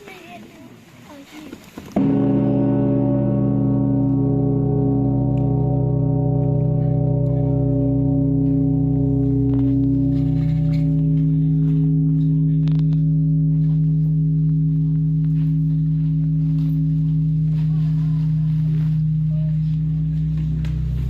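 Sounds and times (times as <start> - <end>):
large bell ringing: 2.0 - 21.0.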